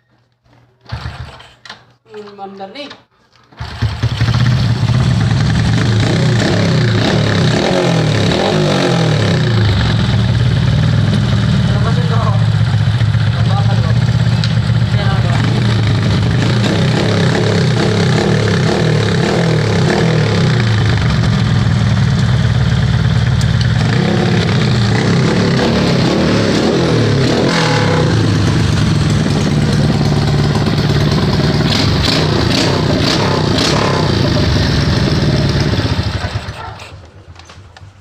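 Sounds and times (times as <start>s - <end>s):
motorcycle engine revving: 3.6s - 38.0s.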